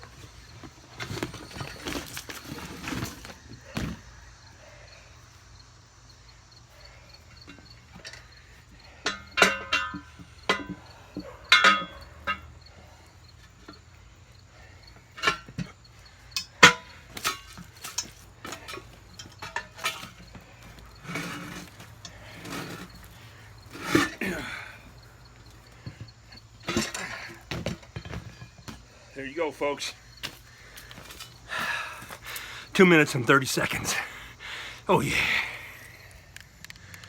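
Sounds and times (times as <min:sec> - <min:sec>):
metal clanks and knocks: 0:09.0 - 0:12.5, 0:15.0 - 0:15.8, 0:16.4 - 0:24.2, 0:25.8 - 0:28.8
metal scraping: 0:16.6 - 0:24.4.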